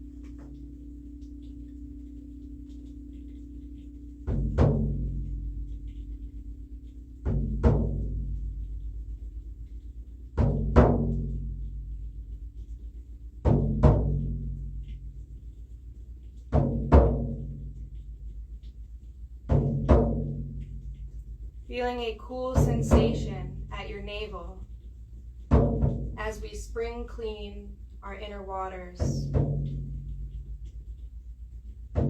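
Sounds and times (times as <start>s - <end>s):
deep drum double beats: 2.4s - 32.0s.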